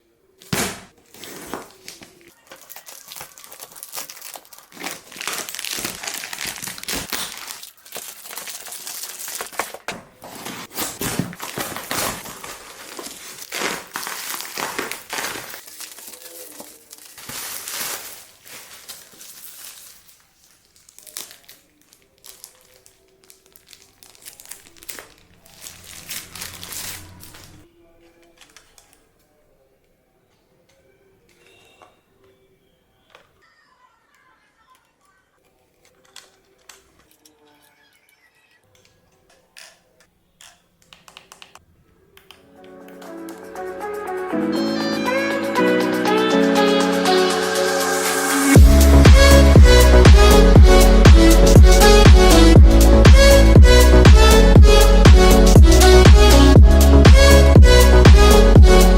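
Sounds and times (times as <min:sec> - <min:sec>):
packaging crinkling and rustling: 0:00.4 - 0:29.0.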